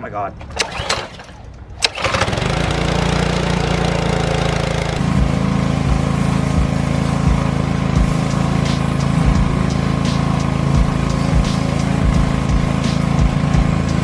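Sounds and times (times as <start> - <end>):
small gas engine running: 0.6 - 14.0
short low thumps: 5.0 - 7.4.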